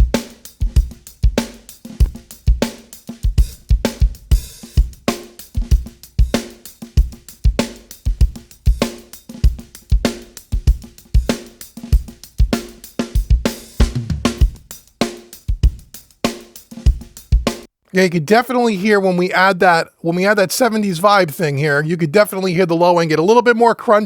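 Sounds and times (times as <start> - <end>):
drum kit groove: 0.0 - 19.8.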